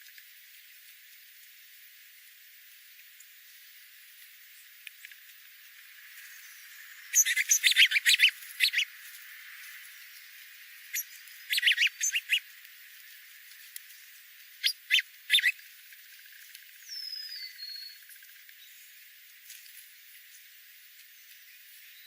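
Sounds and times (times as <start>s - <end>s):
small songbirds chirping: 0.0s - 22.0s
falling bird whistle: 7.1s - 8.9s, 10.9s - 12.4s, 14.6s - 15.6s.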